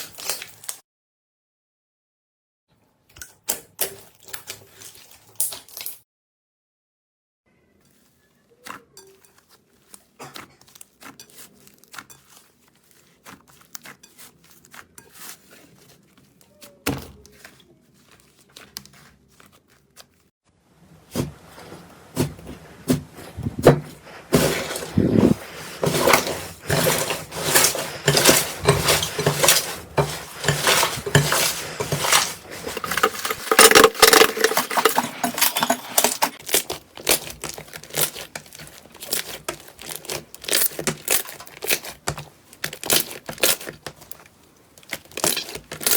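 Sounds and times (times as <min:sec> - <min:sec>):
slime clicking and crackling: 0:30.8 - 0:45.9.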